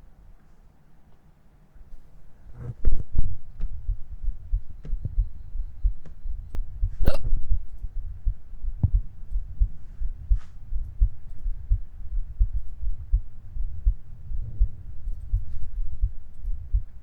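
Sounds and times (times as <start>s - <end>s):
low thumping rumble: 2.4s - 17.0s
person hiccuping: 7.0s - 7.4s.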